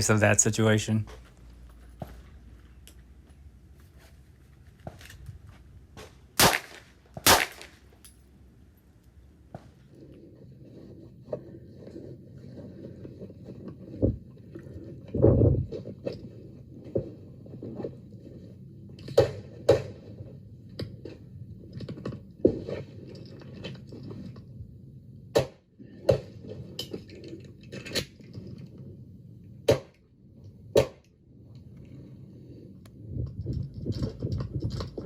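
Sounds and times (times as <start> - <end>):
gunshots: 6.4 - 7.8.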